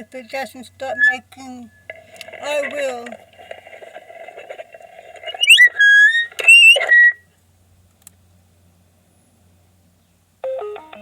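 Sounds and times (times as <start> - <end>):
microphone feedback squeal: 0.9 - 1.8, 5.2 - 7.2.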